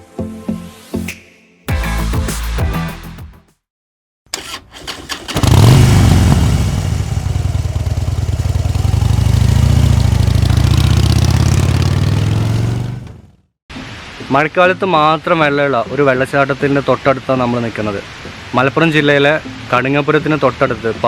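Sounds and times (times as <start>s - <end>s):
motorcycle engine running: 5.2s - 13.3s.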